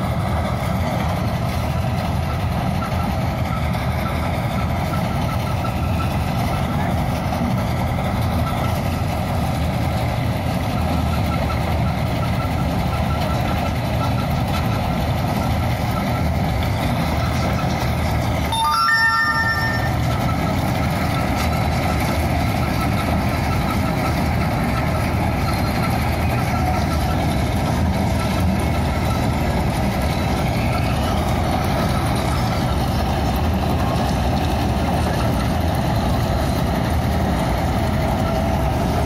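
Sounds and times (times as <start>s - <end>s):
combine harvester diesel engine: 0.0s - 39.0s
short high-pitched beep: 18.5s - 20.5s.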